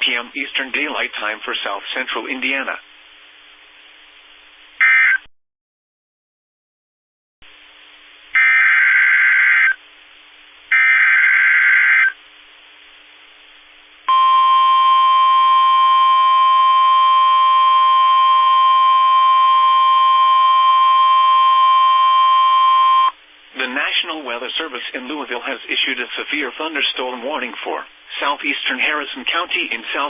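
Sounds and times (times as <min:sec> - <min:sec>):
weather radio alarm tone: 0:04.8 - 0:05.3, 0:08.4 - 0:09.8, 0:10.7 - 0:12.2, 0:14.1 - 0:23.2
faint hiss: 0:23.2 - 0:30.0.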